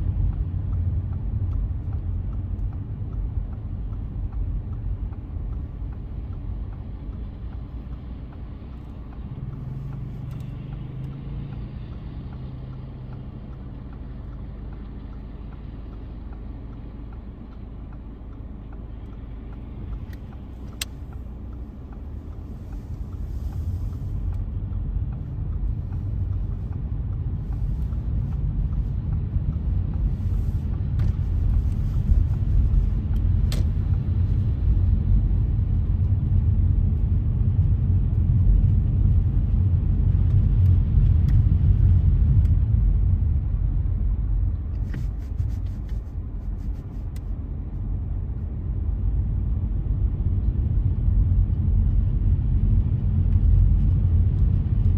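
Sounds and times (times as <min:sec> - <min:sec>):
car driving on slushy road: 0:00.0 - 0:54.9.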